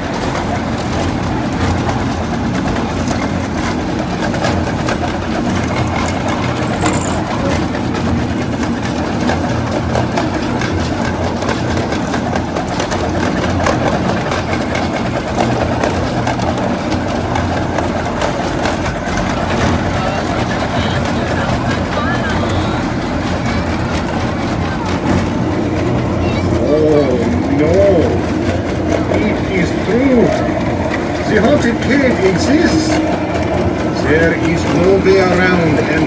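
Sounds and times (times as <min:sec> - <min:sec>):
train rumbling on track: 0:00.0 - 0:36.0
wheels clicking on rails: 0:00.0 - 0:36.0.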